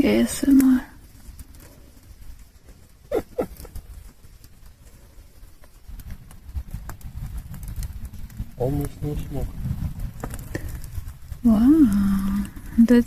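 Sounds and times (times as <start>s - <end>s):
wood fire crackling: 0.0s - 13.0s
low rumble: 5.9s - 13.0s.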